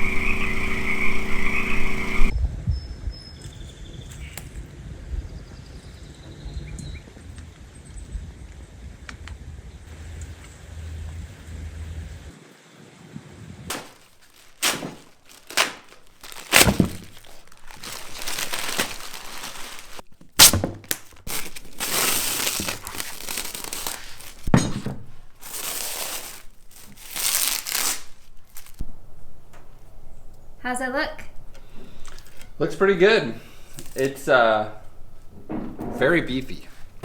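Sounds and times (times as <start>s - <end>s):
plastic sheeting crinkling: 13.7s - 28.8s.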